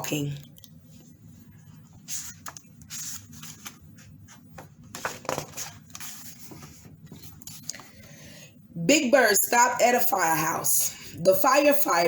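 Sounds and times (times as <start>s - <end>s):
book pages rustling: 0.9s - 8.2s.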